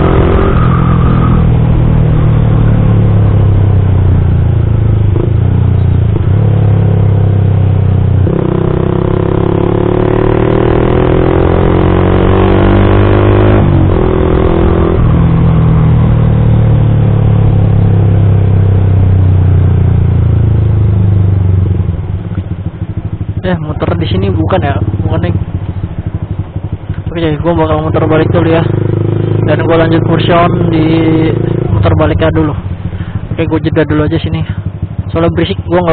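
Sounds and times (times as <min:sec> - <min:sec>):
motorcycle engine revving: 0:00.0 - 0:35.9.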